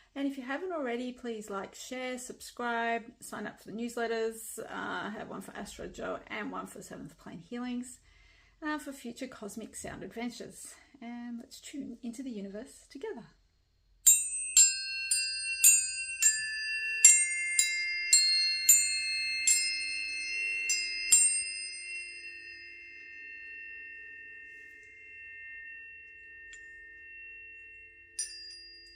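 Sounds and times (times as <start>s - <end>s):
bell-like struck metal tones: 14.1s - 28.9s.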